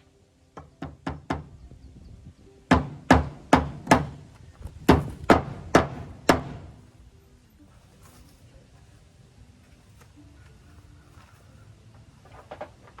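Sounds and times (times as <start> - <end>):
hammer driving nail into wood: 2.7 - 4.2.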